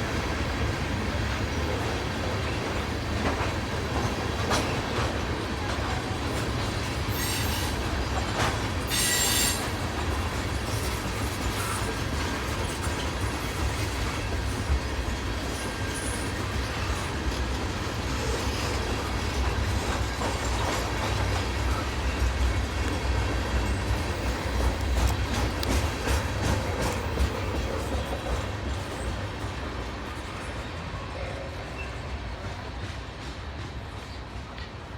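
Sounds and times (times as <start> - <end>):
freight train rumbling past: 0.0 - 34.9
wheels clicking over rail joints: 1.3 - 30.5
high-pitched wheel squeals: 8.9 - 9.7.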